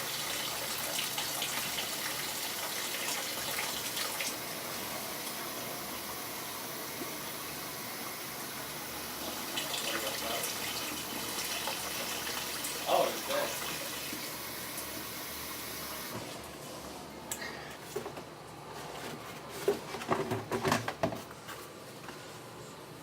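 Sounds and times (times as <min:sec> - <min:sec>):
water running from a faucet: 0:00.0 - 0:16.2.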